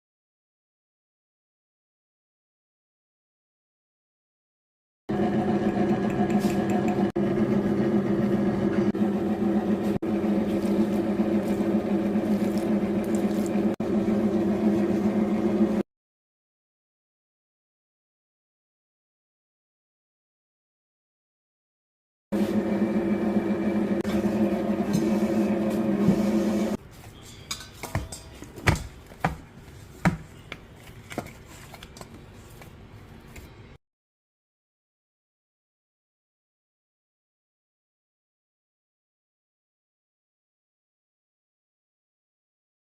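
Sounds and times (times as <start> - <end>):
knocks and clicks: 5.6 - 7.1.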